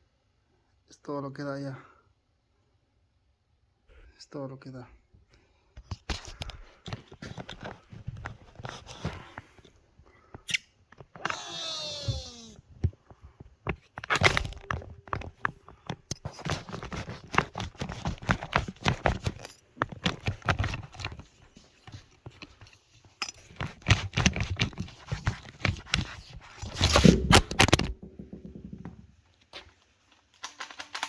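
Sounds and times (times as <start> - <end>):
metal tool clicks and scraping: 10.4 - 11.4, 22.2 - 24.7.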